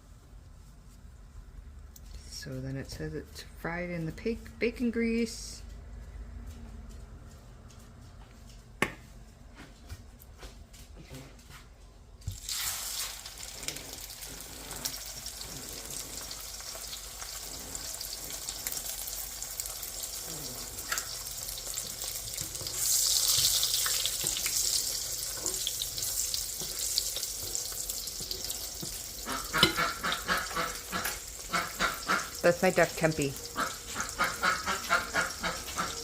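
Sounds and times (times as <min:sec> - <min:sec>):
food sizzling in frying pan: 0:12.3 - 0:36.0.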